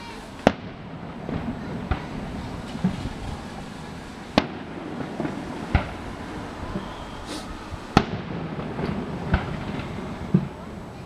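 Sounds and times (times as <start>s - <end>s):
faint firework pops: 0.0s - 11.0s
fireworks bangs: 0.0s - 11.0s
brief high hiss: 5.1s - 8.0s.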